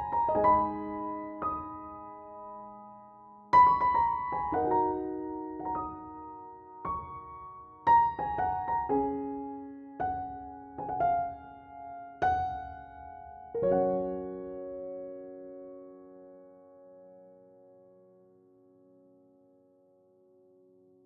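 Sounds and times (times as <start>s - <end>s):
gentle piano music: 0.0s - 21.0s.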